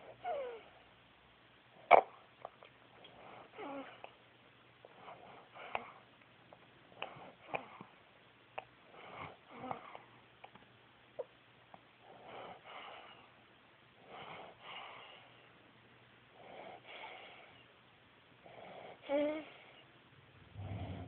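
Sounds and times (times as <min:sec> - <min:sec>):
baby snoring: 0:03.4 - 0:04.1, 0:18.5 - 0:19.7, 0:20.5 - 0:21.0.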